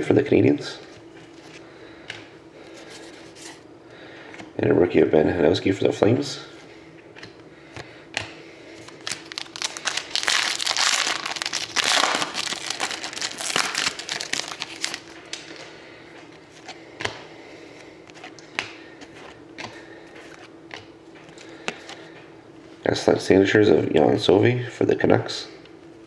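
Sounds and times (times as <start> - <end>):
plastic wrapper tearing and crinkling: 8.8 - 15.4.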